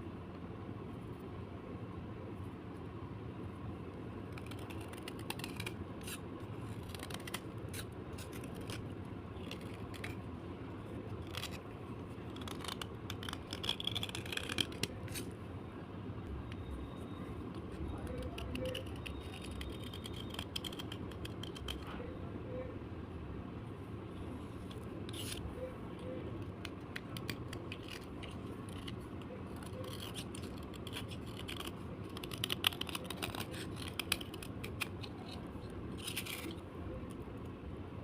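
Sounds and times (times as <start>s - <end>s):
slate crunching and scraping: 26.6s - 36.6s.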